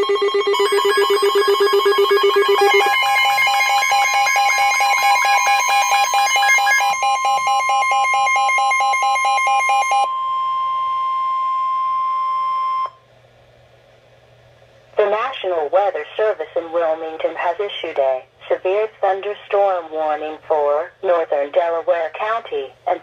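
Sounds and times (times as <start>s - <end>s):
pulsing electronic alarm: 0.0s - 13.0s
steady warning tone: 0.0s - 13.0s.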